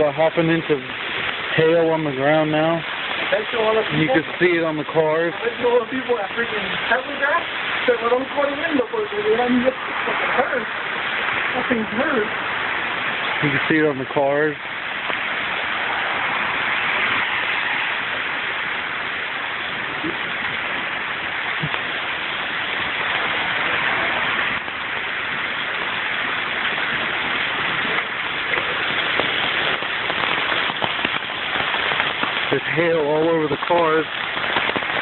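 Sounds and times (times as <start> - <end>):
hailstones ticking: 0.0 - 35.0
heavy rain and hail: 0.0 - 35.0.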